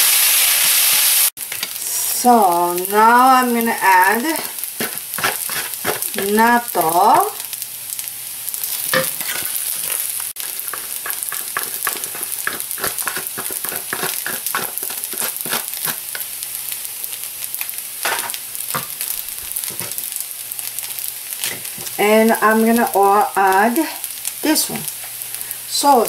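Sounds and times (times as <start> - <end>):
rice sizzling in a pan: 0.0 - 26.0
spatula scraping a pan: 4.8 - 6.4, 8.9 - 16.2.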